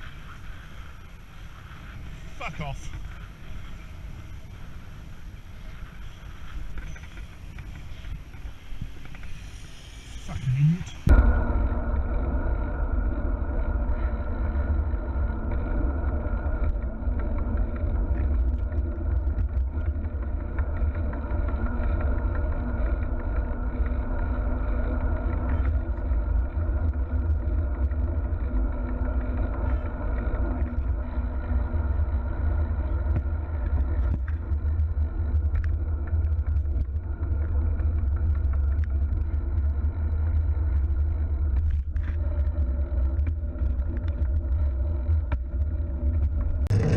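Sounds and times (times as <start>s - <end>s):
road traffic rumble: 0.0s - 46.9s
car engine running: 11.1s - 46.9s.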